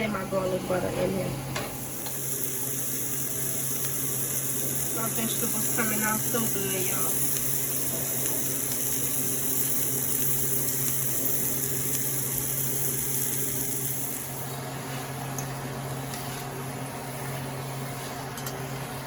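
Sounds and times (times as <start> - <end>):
steady low hum: 0.0 - 19.0
vegetables sizzling in a skillet: 1.7 - 14.6.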